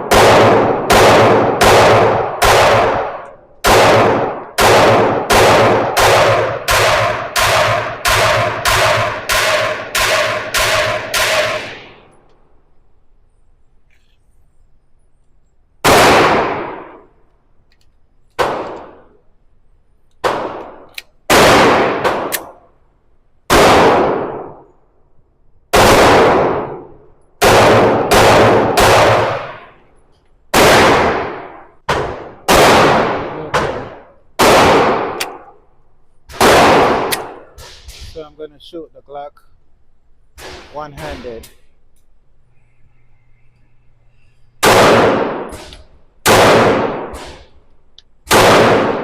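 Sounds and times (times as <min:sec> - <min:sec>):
pistol shots echoing: 0:00.0 - 0:12.2, 0:15.8 - 0:17.2, 0:18.4 - 0:19.2, 0:20.2 - 0:22.7, 0:23.5 - 0:24.7, 0:25.7 - 0:29.8, 0:30.5 - 0:35.6, 0:36.3 - 0:37.6, 0:44.6 - 0:47.6, 0:48.2 - 0:49.0.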